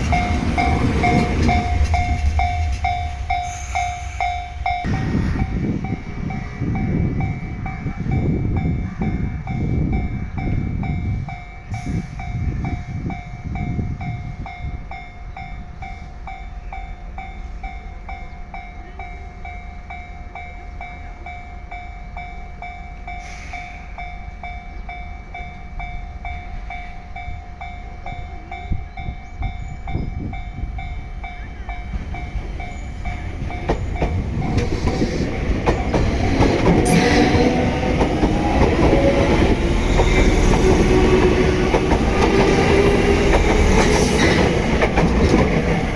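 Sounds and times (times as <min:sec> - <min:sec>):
train wheels clattering on rail joints: 0:00.0 - 0:05.4, 0:31.2 - 0:45.9
electric train passing: 0:00.0 - 0:45.9
level-crossing warning bell: 0:00.0 - 0:45.9.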